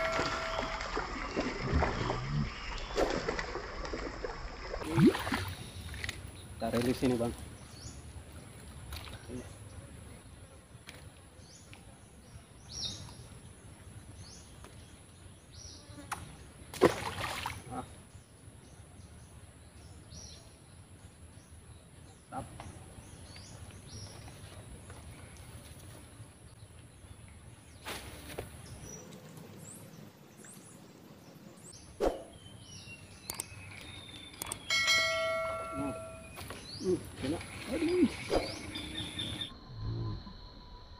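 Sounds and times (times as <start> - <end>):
thin high hum: 0.0 - 3.7
bird chirping: 31.6 - 40.6.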